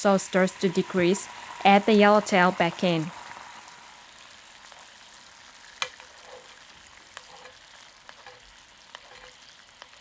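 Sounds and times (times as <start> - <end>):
sauce sizzling in a frying pan: 0.0 - 10.0.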